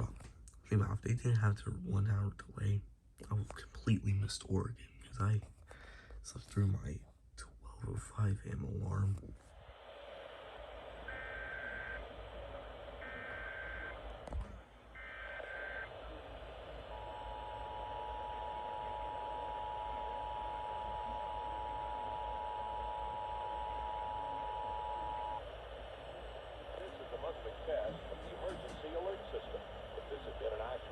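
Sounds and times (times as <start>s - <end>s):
radio hiss: 7.7s - 30.9s
digital data tones: 11.1s - 14.1s.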